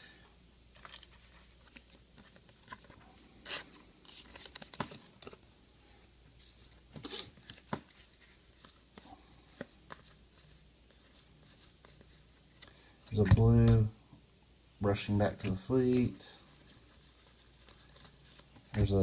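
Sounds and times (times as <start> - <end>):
trading cards being flipped: 0.7 - 5.4, 6.7 - 13.9.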